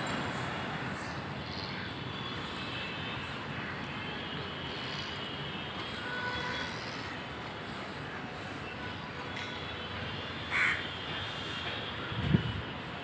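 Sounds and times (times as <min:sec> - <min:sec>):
city traffic hum: 0:00.0 - 0:13.0.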